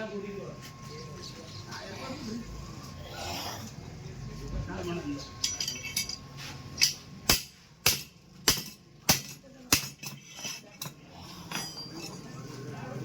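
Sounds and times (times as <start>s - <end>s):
hammer striking metal: 6.8s - 10.6s.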